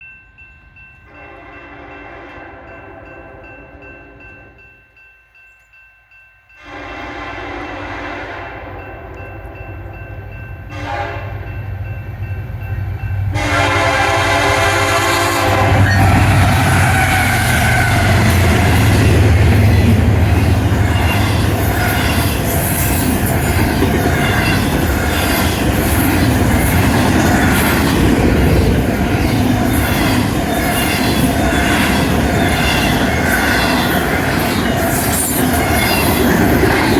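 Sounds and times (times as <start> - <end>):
train air horn: 6.6 - 9.0, 10.7 - 11.5, 13.3 - 19.4
wheels clattering on rail: 15.6 - 36.9.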